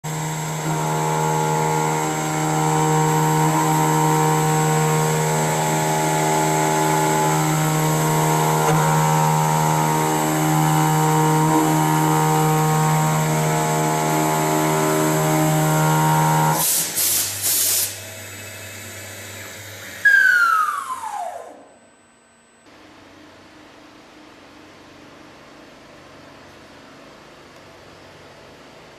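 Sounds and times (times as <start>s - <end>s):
spindle winding down: 0.0s - 16.6s
machine whining: 0.0s - 22.5s
short hisses: 16.6s - 18.1s.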